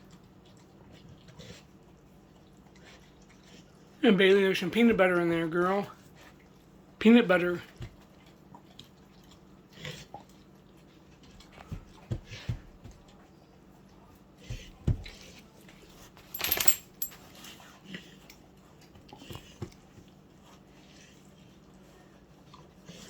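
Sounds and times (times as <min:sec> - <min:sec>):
dog licking and chewing: 0:00.0 - 0:04.0, 0:07.7 - 0:15.4
metallic clinking: 0:16.3 - 0:17.2.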